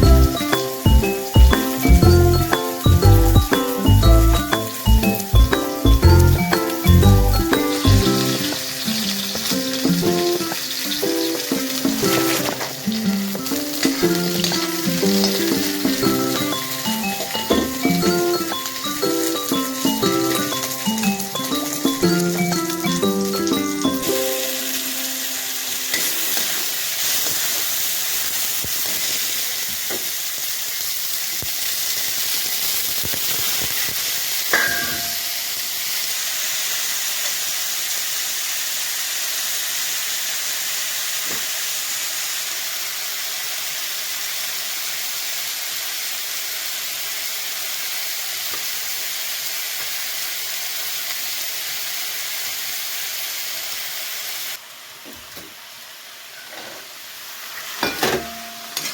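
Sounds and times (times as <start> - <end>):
food sizzling in a pan: 0.0 - 58.9
sharp metallic clank: 34.5 - 35.4.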